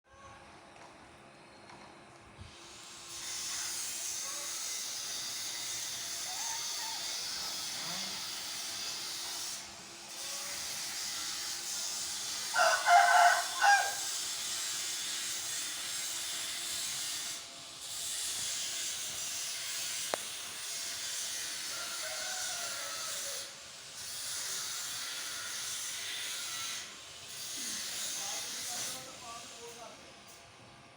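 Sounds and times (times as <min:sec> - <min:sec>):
farm animal call: 0:12.6 - 0:14.2.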